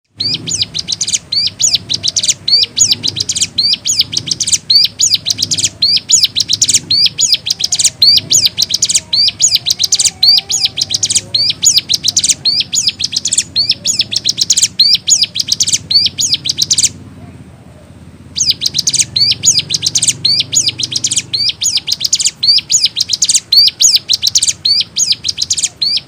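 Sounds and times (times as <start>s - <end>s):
bird singing high fast song: 0.0s - 17.1s, 17.8s - 26.0s.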